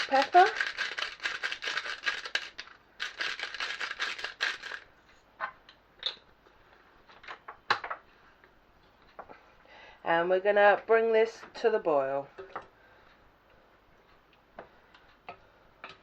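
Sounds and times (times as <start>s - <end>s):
pepper grinder crunching: 0.0s - 4.9s.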